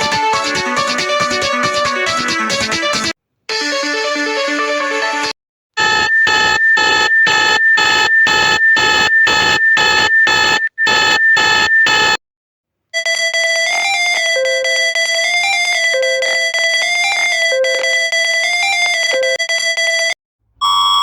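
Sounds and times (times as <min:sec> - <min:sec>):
electronic alarm beeping rapidly: 0:05.8 - 0:12.2, 0:20.6 - 0:21.0
electronic alert stepping tones: 0:05.8 - 0:12.2.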